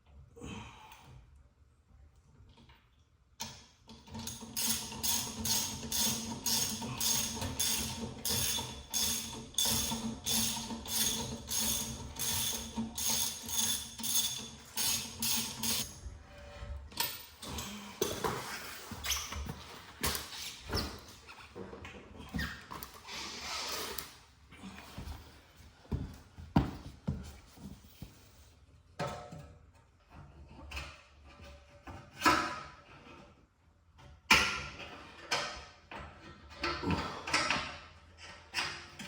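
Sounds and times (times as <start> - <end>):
ratchet wrench clicking: 4.6 - 15.9.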